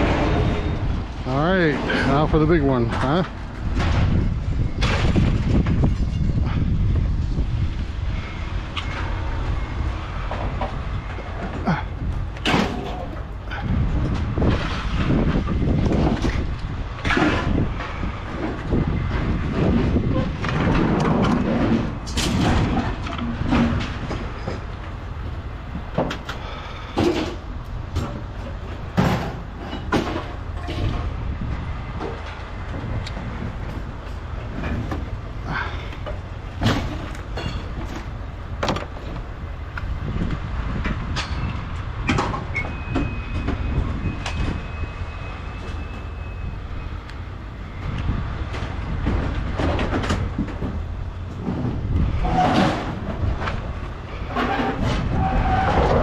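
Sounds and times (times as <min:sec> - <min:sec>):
metallic clanks and knocks: 0:25.9 - 0:31.1, 0:36.0 - 0:39.2.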